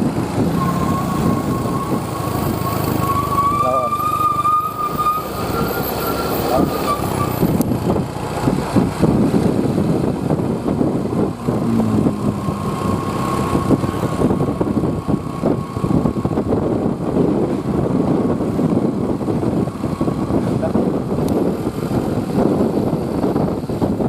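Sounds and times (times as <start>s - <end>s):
bus engine rumbling: 0.0s - 24.0s.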